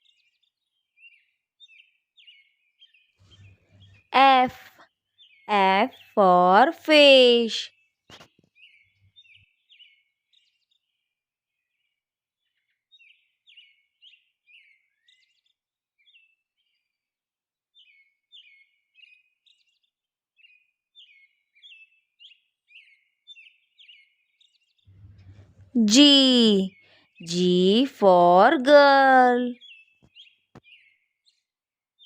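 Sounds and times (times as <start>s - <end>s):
faint bird chirping: 2.3s - 6.2s, 24.9s - 31.0s.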